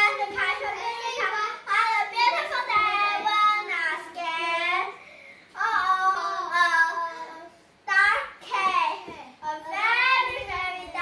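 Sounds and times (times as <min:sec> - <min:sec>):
children singing or chanting: 0:05.6 - 0:07.6.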